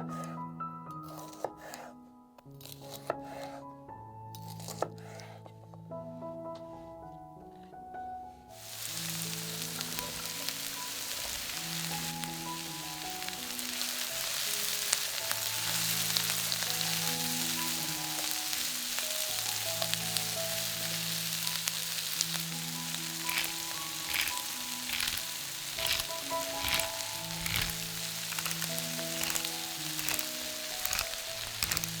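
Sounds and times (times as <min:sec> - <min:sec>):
soft background music: 0:00.0 - 0:32.0
food sizzling: 0:08.6 - 0:32.0
frying crackles: 0:08.6 - 0:32.0.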